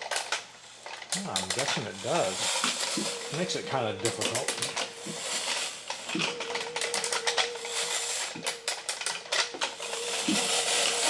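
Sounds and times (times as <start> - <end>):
clockwork clicking and ratcheting: 0.0 - 11.0.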